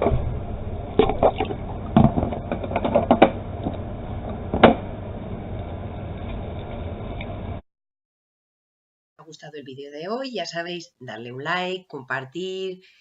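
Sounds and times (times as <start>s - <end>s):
steady low hum: 0.0s - 7.6s.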